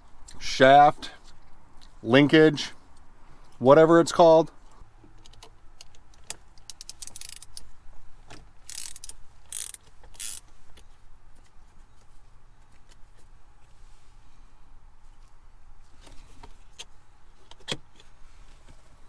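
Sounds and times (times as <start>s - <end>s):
socket ratchet clicking: 5.8s - 7.7s, 8.6s - 10.4s.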